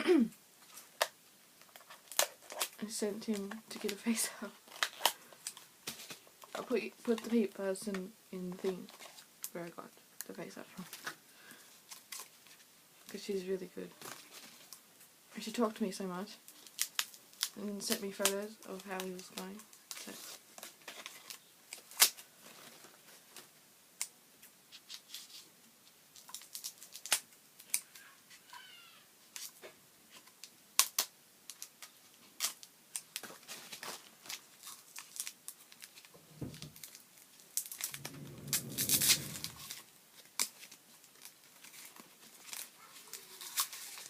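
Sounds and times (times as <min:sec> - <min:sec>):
wrapping rustling: 0:00.6 - 0:07.4, 0:29.4 - 0:44.0.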